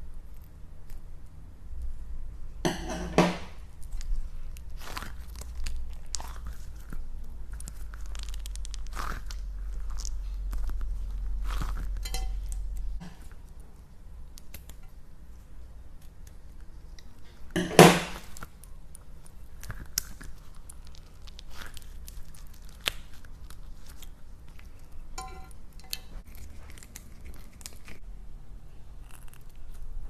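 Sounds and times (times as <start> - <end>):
slime clicks and crackles: 3.7 - 12.6, 18.2 - 28.0
low hum: 7.0 - 14.3.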